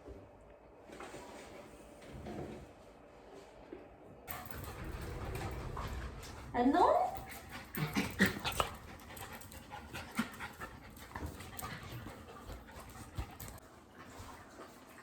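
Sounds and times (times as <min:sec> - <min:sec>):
dog panting: 0:04.3 - 0:15.0.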